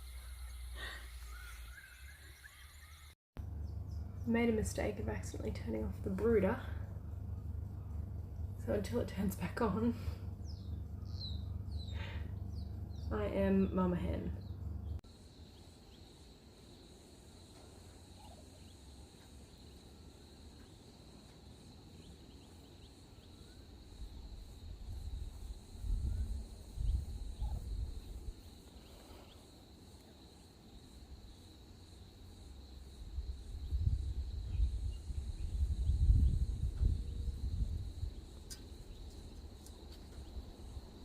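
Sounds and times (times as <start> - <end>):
insects droning: 0.0 - 41.0
faint bird chirps: 0.1 - 4.3, 25.9 - 29.5
low rumbles on microphone: 33.1 - 38.3.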